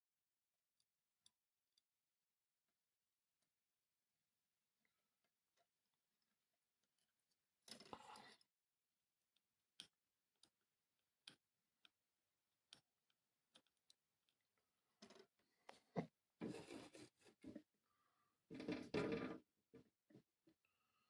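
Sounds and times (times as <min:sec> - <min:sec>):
faint clicks and taps: 0:09.3 - 0:12.0, 0:12.7 - 0:17.7.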